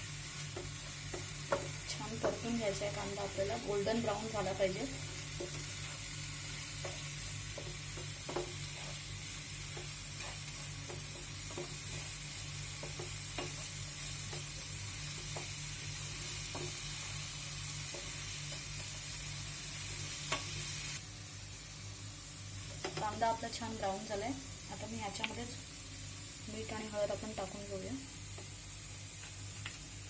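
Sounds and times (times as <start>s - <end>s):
onions sizzling in hot oil: 0.0s - 30.0s
spoon clicking and scraping pan: 6.8s - 14.6s.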